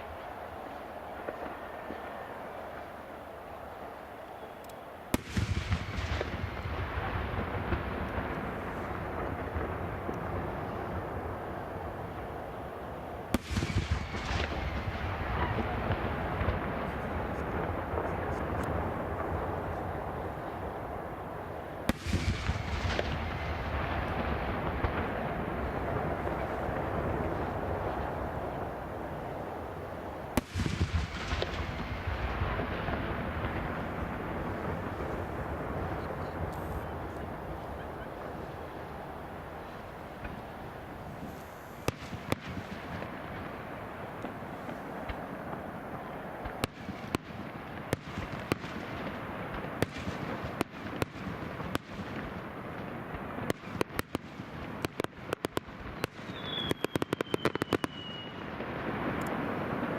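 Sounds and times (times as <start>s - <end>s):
firework crackling pops: 0.0s - 3.5s, 4.1s - 12.6s, 13.2s - 59.9s
firework whistle falling in pitch: 56.0s - 58.5s.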